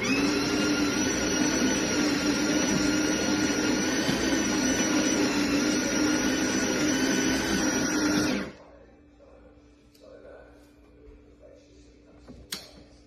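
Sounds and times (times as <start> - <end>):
espresso machine motor whirring: 0.0 - 8.6.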